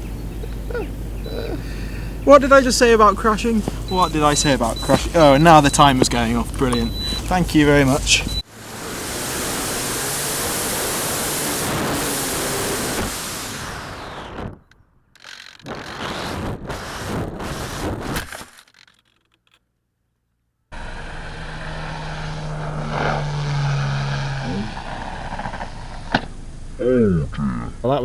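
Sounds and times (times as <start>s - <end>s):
steady hiss with low hum: 0.0s - 8.4s, 25.9s - 28.0s
knocks and scrapes on ground: 3.4s - 6.9s, 14.5s - 19.6s, 24.4s - 26.4s.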